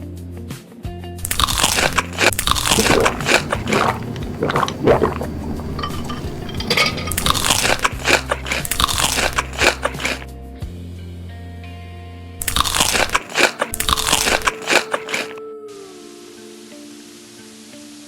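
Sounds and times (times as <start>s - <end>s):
crunching and chewing crisp food: 1.2s - 10.3s, 12.4s - 15.4s.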